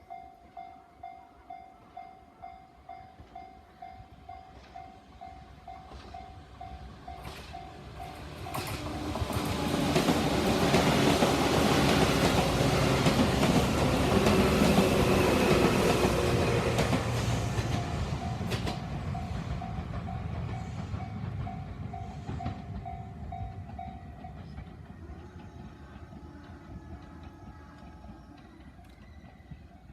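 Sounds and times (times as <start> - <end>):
level crossing warning bell: 0.0 - 9.2
train wheels clattering: 4.5 - 29.9.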